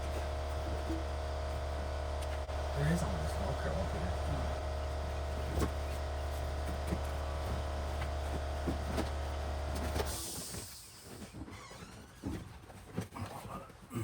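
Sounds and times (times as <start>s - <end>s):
mechanical motor hum: 0.0s - 10.3s.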